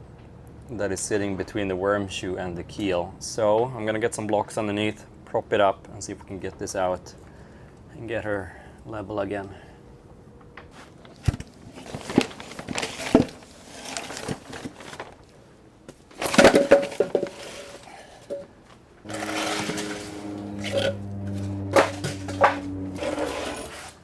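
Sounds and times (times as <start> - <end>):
steady low hum: 19.0 - 24.0.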